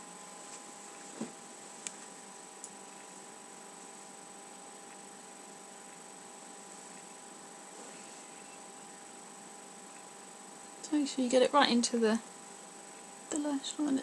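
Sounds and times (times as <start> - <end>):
electrical hum and hiss: 0.0 - 14.0.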